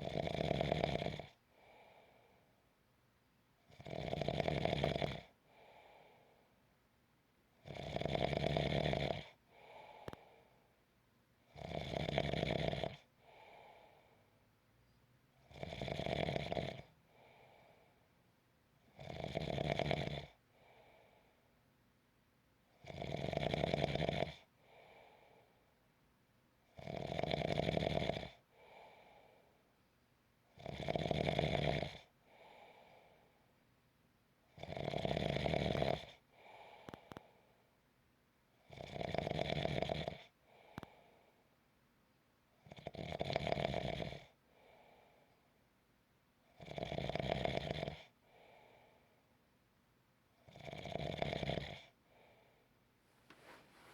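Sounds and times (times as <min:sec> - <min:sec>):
soft breath: 0:01.4 - 0:02.7, 0:05.3 - 0:06.7, 0:09.4 - 0:10.8, 0:13.1 - 0:15.0, 0:17.0 - 0:18.2, 0:20.5 - 0:21.6, 0:24.6 - 0:25.8, 0:28.5 - 0:29.7, 0:32.2 - 0:33.6, 0:36.2 - 0:37.8, 0:40.4 - 0:41.5, 0:44.4 - 0:45.5, 0:48.2 - 0:49.4, 0:52.0 - 0:53.9.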